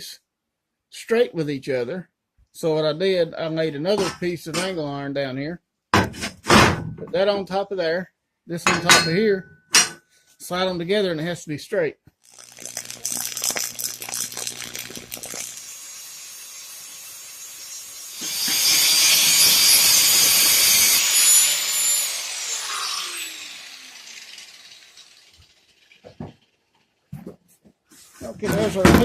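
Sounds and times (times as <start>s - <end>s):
power saw cutting steel: 12.2s - 27.0s.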